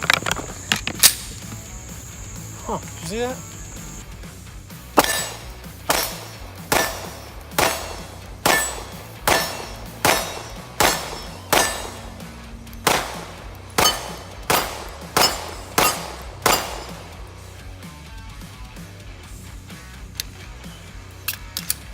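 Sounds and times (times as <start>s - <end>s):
pistol shots: 5.0s - 17.6s.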